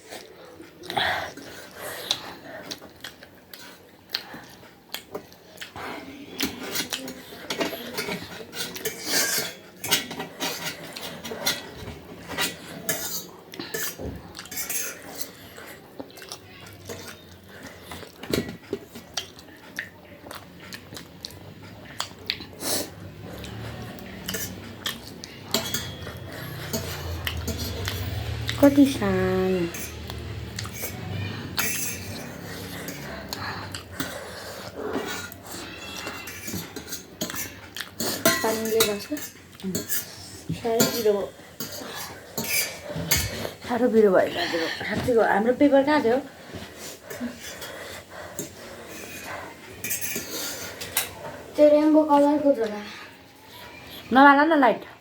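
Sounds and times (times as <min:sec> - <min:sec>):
cutlery scraping a plate: 0:06.3 - 0:15.6, 0:23.3 - 0:29.0, 0:29.6 - 0:43.7, 0:46.5 - 0:51.4.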